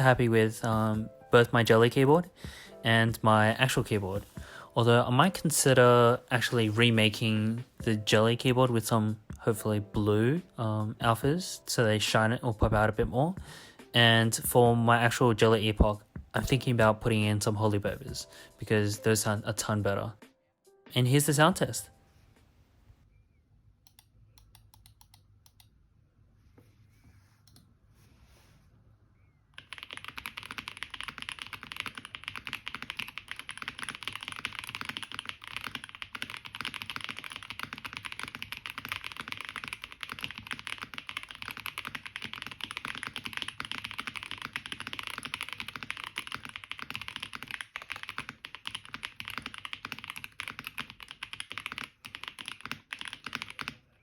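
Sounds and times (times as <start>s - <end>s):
mechanical keyboard typing: 29.6s - 53.8s.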